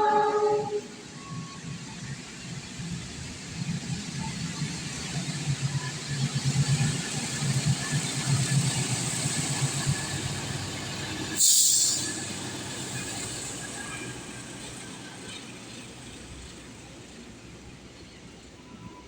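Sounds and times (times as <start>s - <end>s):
train passing rumble: 0.0s - 19.0s
loud hiss: 9.5s - 13.8s.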